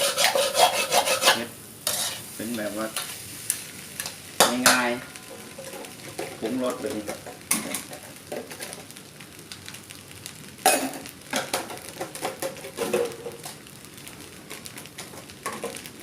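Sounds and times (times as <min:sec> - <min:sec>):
spatula scraping a pan: 0:00.0 - 0:08.9
fried rice sizzling in a pan: 0:00.0 - 0:16.0.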